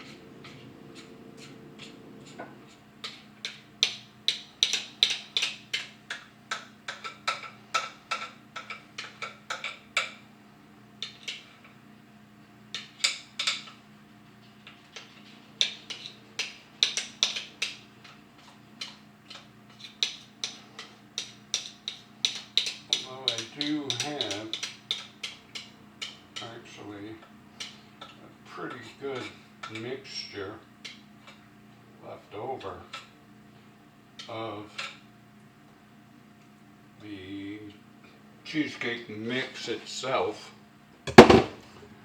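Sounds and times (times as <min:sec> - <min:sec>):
faint steady hum: 0:00.0 - 0:42.0
metal utensil tapping mixing bowl: 0:20.1 - 0:26.5.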